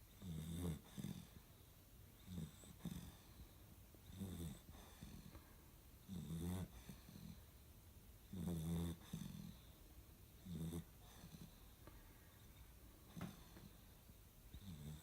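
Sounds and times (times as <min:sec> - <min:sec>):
quiet breaths: 0:00.0 - 0:15.0
pet snoring: 0:00.1 - 0:01.4, 0:02.2 - 0:03.4, 0:04.1 - 0:05.3, 0:06.0 - 0:07.4, 0:08.3 - 0:09.7, 0:10.4 - 0:11.6, 0:14.5 - 0:15.0.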